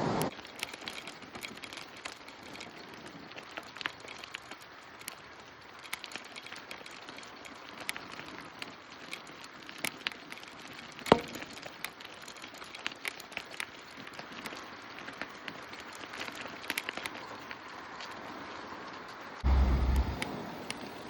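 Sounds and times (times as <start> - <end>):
bicycle clicks and ticks: 0.3 - 21.0.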